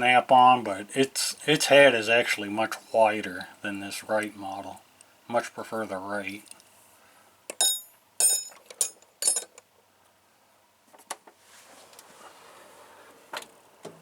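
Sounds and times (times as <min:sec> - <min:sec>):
steel hand tools clinking: 0:07.5 - 0:09.6.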